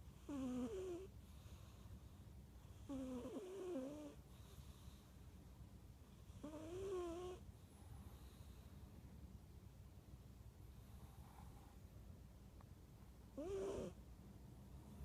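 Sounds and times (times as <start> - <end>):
faint whistling snoring: 0.2 - 1.1, 2.8 - 4.8, 6.4 - 7.4, 13.4 - 14.0.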